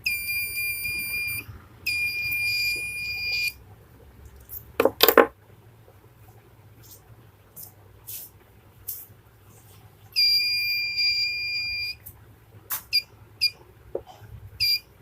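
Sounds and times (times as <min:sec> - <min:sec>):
high-pitched buzzer beep: 0:00.1 - 0:03.6, 0:10.2 - 0:12.0, 0:14.6 - 0:14.9.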